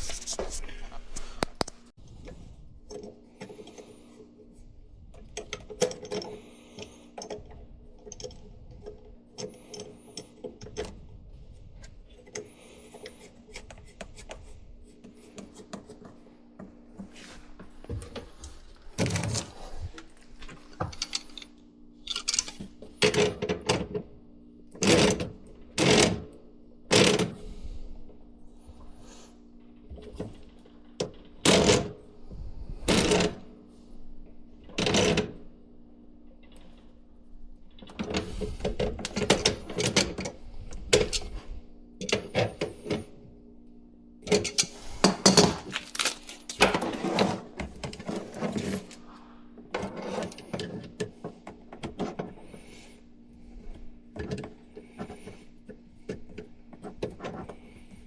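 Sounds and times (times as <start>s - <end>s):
steady low hum: 0.0s - 58.0s
tools and parts rattling: 5.1s - 11.0s, 16.8s - 23.9s, 37.7s - 41.4s, 44.2s - 52.8s.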